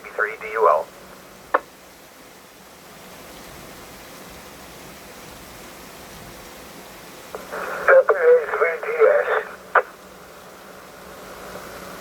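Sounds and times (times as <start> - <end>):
radio static hiss: 0.0 - 2.1, 6.0 - 12.0.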